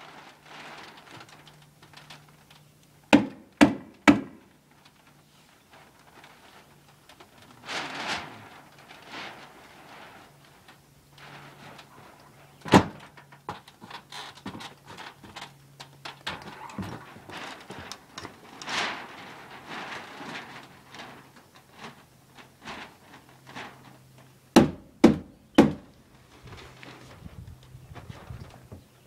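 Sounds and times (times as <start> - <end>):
scraping rustle: 0.0 - 3.0, 4.4 - 24.5, 25.8 - 29.0
loud knocks of building work: 3.1 - 4.4, 24.6 - 25.9
small clicks and clatter: 13.0 - 24.2.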